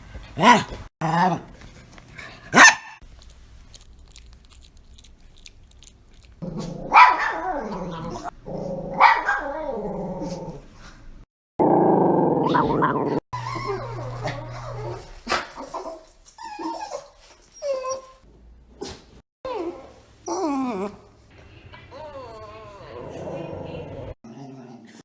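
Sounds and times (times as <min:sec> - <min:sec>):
dog barking: 0:02.5 - 0:03.0, 0:06.9 - 0:07.4, 0:09.0 - 0:09.5
dogs growling: 0:04.1 - 0:10.7, 0:11.6 - 0:15.6, 0:21.9 - 0:25.0.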